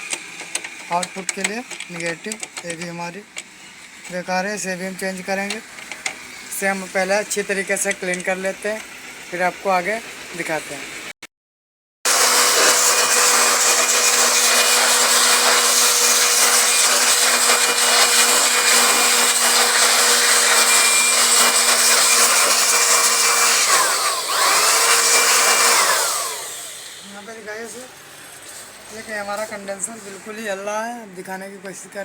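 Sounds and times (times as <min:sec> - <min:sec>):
electric air blower motor whine: 0:12.1 - 0:30.7.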